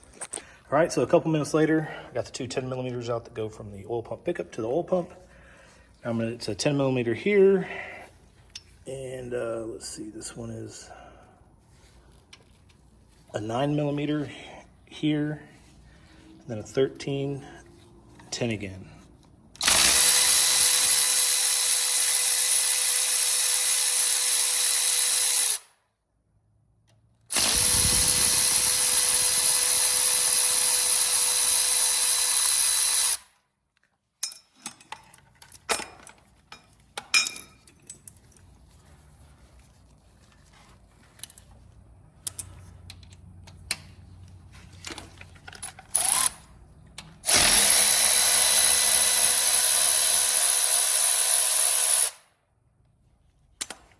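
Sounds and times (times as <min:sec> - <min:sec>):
cordless power tool motor spinning: 0:19.6 - 0:25.7, 0:27.3 - 0:33.3, 0:45.9 - 0:46.4, 0:47.2 - 0:52.2
metallic clicks and taps of tools: 0:34.2 - 0:38.4, 0:42.2 - 0:46.0, 0:53.6 - 0:53.9.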